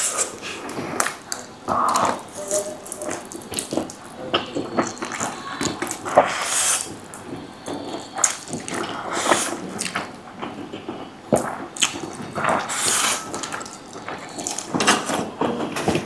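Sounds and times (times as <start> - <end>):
wet squelching of noodles: 0.0 - 16.0.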